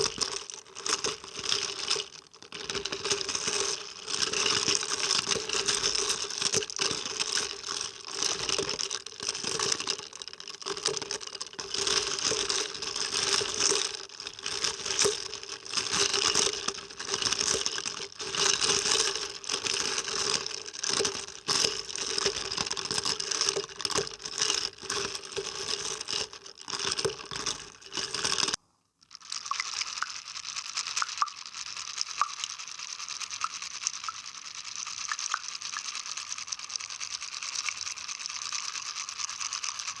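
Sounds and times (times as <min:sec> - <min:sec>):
water splashing and bubbling: 0:29.2 - 0:30.2, 0:31.0 - 0:32.6, 0:35.0 - 0:35.9.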